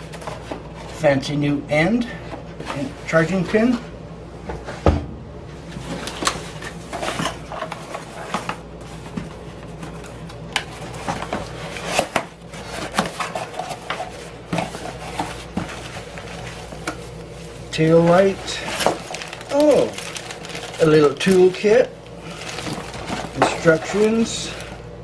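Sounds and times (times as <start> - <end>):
packaging rustling: 5.8 - 25.0.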